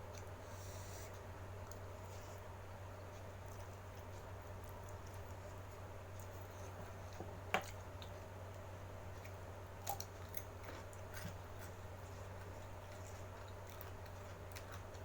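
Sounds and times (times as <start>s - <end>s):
steady low hum: 0.0s - 15.0s
chewing and mouth noises: 1.6s - 15.0s.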